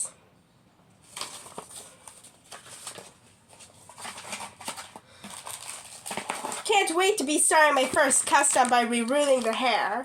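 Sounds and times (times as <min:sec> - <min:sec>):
packaging rustling: 0:01.0 - 0:10.0.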